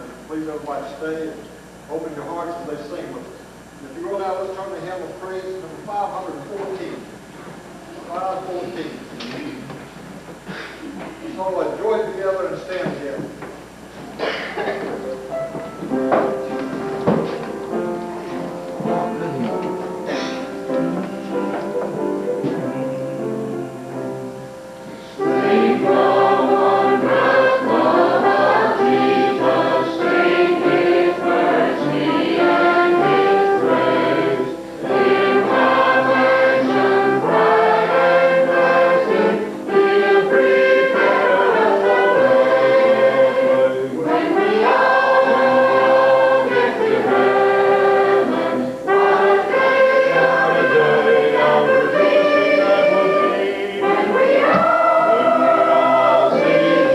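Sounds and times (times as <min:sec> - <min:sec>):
congregation singing a hymn: 0:14.2 - 0:56.9
instrumental accompaniment: 0:14.2 - 0:56.9.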